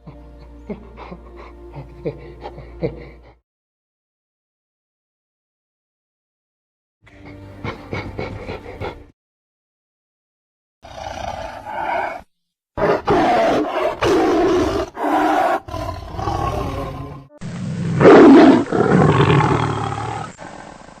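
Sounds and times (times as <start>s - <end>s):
animal roaring: 10.8s - 21.0s.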